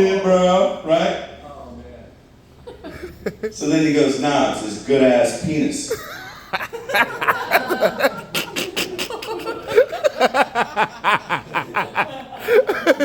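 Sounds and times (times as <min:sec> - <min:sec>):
audience laughing: 0:02.6 - 0:03.6, 0:05.9 - 0:13.0.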